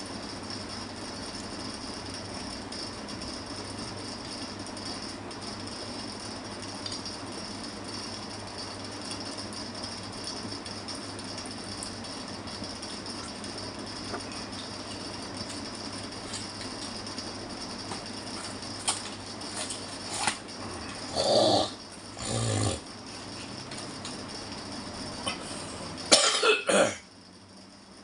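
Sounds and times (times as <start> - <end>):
steady low hum: 0.0 - 28.0
person coughing: 26.1 - 27.1.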